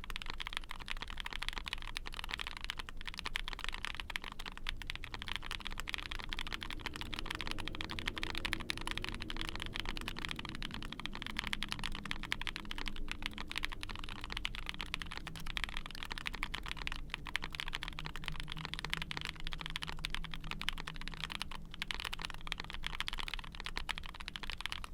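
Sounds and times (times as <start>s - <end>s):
fast typing on mechanical keyboard: 0.0s - 24.9s.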